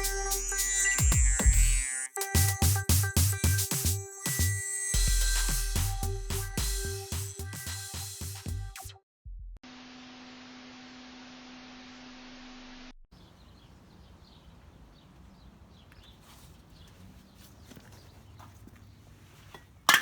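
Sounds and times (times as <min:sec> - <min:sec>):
music: 0:00.0 - 0:09.6
faint outdoor ambience: 0:13.1 - 0:20.0.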